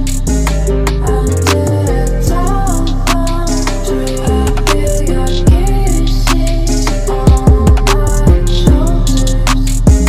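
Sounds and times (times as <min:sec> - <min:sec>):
background music with heavy bass: 0:00.0 - 0:10.0
kick drum beat: 0:05.5 - 0:05.7, 0:07.3 - 0:08.9.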